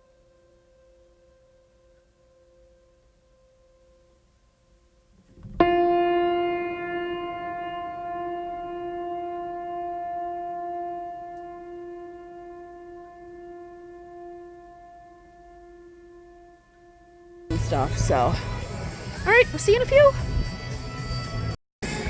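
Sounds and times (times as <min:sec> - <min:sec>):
faint steady tones: 0:00.0 - 0:20.6
ship's horn blast: 0:05.6 - 0:20.7.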